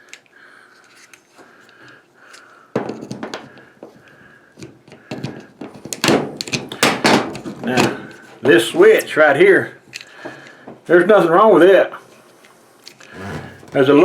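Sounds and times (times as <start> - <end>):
plastic parts knocking and rattling: 4.6 - 8.0.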